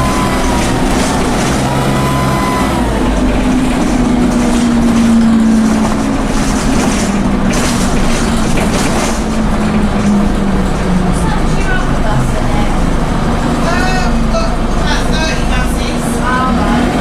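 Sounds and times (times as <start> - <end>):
turbo whine: 0.0 - 6.4
bus diesel engine running: 0.0 - 17.0
road and body noise: 0.0 - 17.0.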